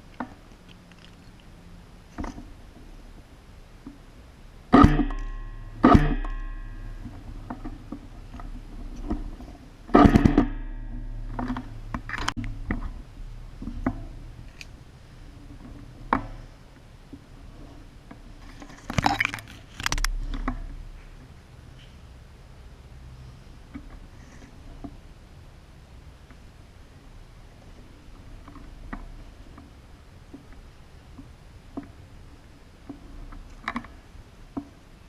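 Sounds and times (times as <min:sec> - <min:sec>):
low steady hum: 0:00.0 - 0:35.0
sharp metallic knocks and clatters: 0:04.8 - 0:14.6.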